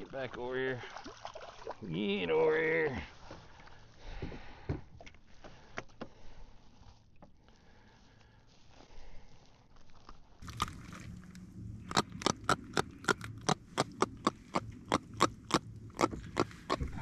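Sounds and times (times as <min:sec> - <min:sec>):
low steady hum: 0:06.3 - 0:17.0.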